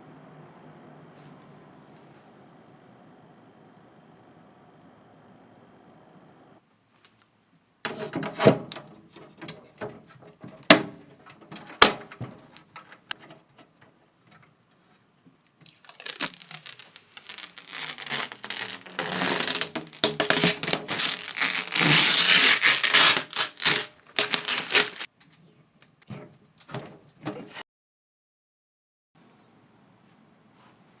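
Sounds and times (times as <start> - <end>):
loud scraping rustle: 7.9 - 13.8, 15.7 - 25.1
sharp clicks and knocks: 7.9 - 14.5
rustling and rubbing: 7.9 - 27.5.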